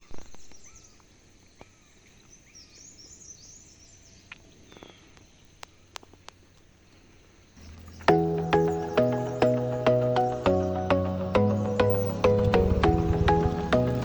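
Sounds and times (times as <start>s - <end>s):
birds chirping: 7.3s - 14.0s
low background rumble: 11.9s - 14.0s.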